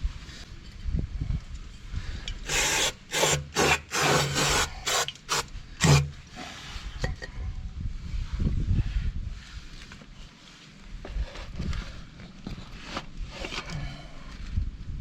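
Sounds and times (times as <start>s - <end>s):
hand file rasping over metal: 2.4s - 6.2s.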